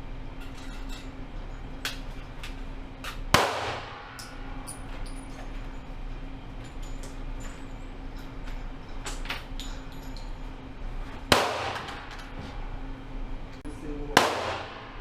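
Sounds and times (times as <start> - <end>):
steady low hum: 0.0 - 15.0
pistol shot: 3.3 - 4.1, 11.3 - 12.0, 14.2 - 15.0.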